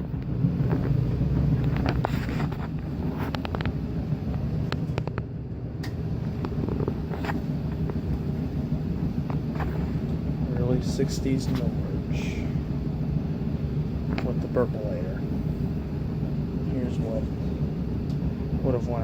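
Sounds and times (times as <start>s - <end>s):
washing machine humming: 0.0s - 19.0s.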